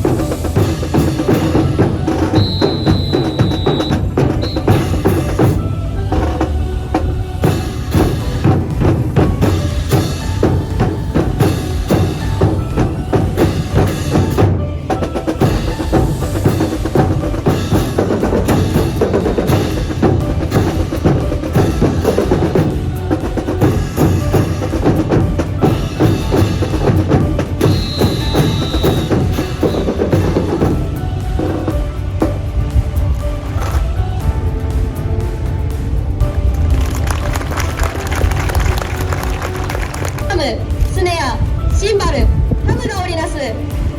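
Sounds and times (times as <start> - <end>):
marching brass band playing: 0.0 - 32.5
drum and percussion beat: 0.0 - 43.9.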